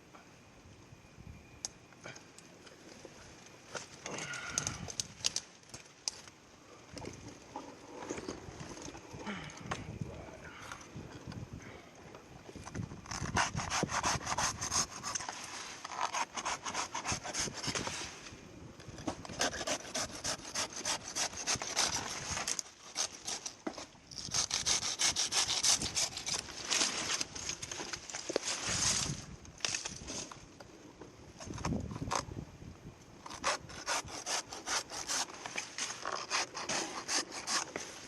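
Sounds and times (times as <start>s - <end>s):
handsaw cutting stems: 13.1s - 17.9s, 19.3s - 23.6s, 24.2s - 27.2s, 33.3s - 38.0s.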